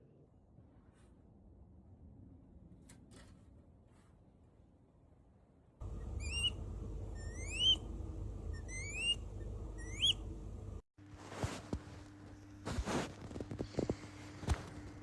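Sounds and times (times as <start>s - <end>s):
owl whistled calls: 5.8s - 10.3s
low background rumble: 5.8s - 10.8s.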